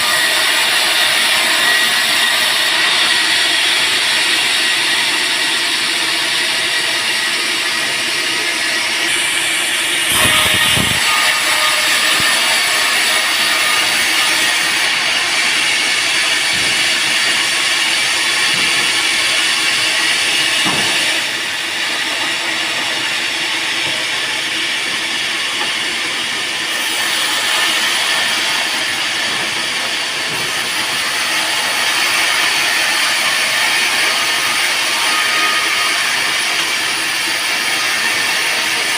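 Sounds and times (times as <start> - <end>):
band saw cutting wood: 0.0 - 38.9.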